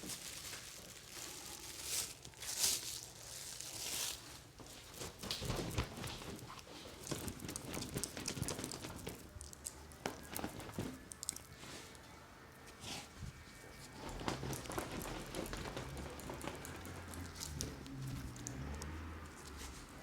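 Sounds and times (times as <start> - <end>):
small tools clicking and tapping: 14.3 - 19.7.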